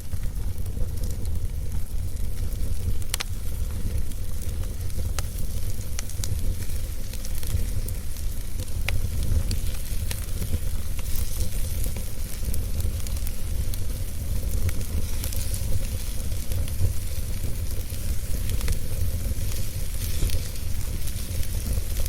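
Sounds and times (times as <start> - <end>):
fire crackles and pops: 0.0 - 22.0
fire rumbling and hissing: 0.0 - 22.0.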